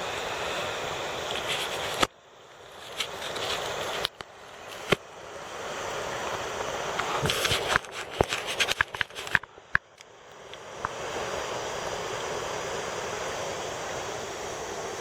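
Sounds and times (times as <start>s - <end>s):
stream water rushing: 0.0s - 15.0s
sharp clicks and knocks: 6.9s - 10.1s.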